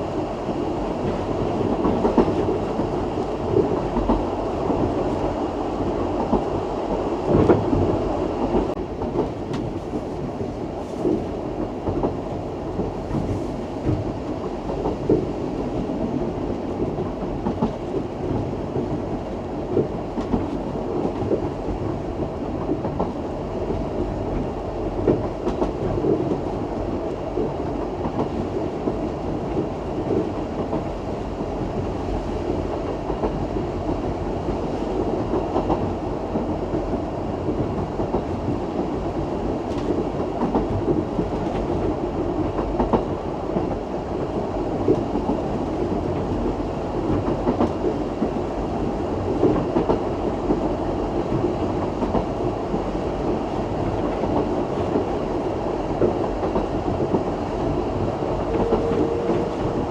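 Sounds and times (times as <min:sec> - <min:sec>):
train coaches rumbling on rails: 0:00.0 - 0:59.9.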